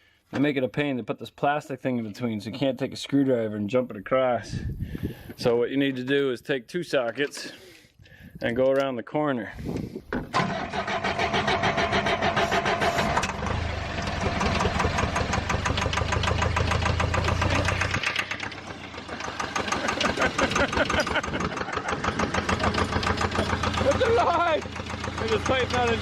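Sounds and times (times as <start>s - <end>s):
diesel engine cranking and running: 10.3s - 26.0s.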